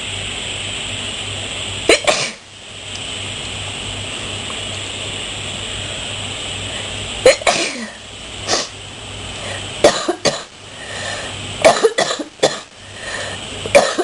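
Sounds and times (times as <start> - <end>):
steady hum: 0.0 - 14.0
person coughing: 1.9 - 2.4, 7.2 - 8.0, 9.8 - 10.5, 11.6 - 12.7, 13.7 - 14.0.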